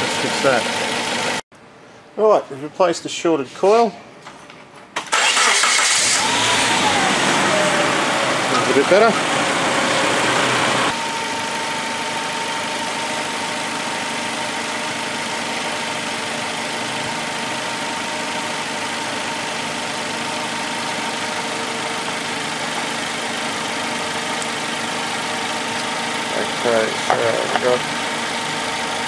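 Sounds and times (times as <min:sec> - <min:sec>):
car engine idling: 0:05.1 - 0:29.0
steady whine: 0:06.7 - 0:29.0.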